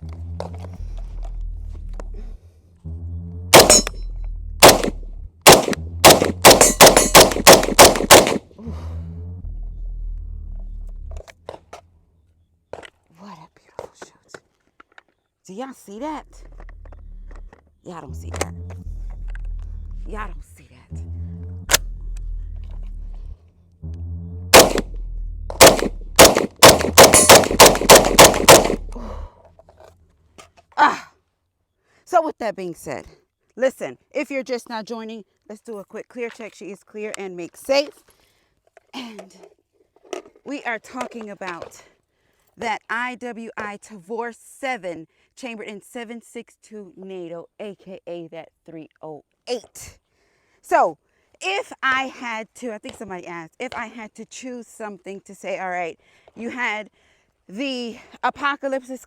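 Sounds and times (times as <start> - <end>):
steady low hum: 0.0 - 12.2, 16.2 - 29.5
rifle shots: 3.5 - 4.0, 4.6 - 8.4, 24.5 - 24.9, 25.6 - 28.9.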